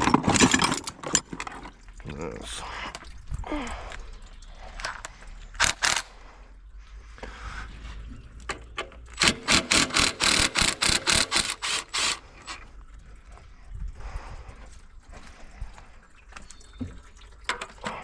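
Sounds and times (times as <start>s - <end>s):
socket ratchet clicking: 9.2s - 12.2s.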